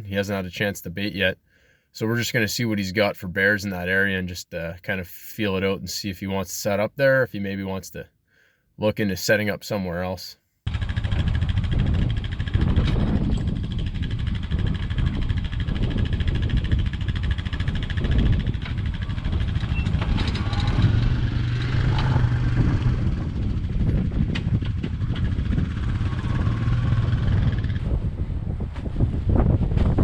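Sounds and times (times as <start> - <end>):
vehicle engine droning: 10.7 - 30.0.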